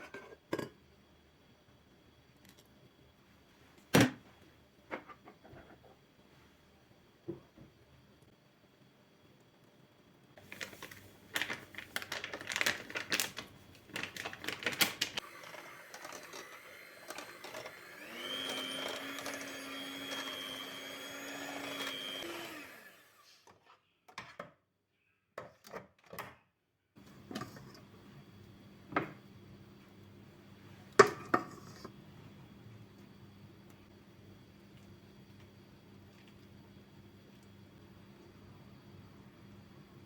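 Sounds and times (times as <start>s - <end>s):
kitchen appliance motor humming: 15.1s - 23.3s.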